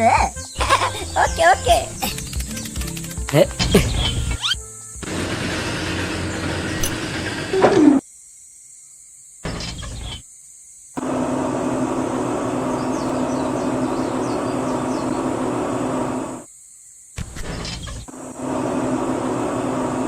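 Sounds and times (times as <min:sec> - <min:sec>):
small motor humming: 0:05.0 - 0:08.0, 0:11.0 - 0:16.5, 0:17.8 - 0:20.0.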